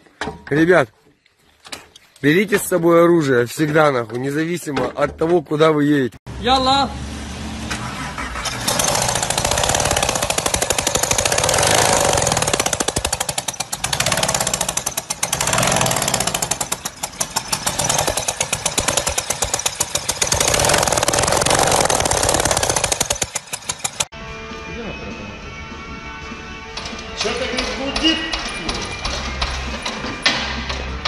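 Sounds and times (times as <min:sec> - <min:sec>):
power tool hammering: 0:08.6 - 0:24.1.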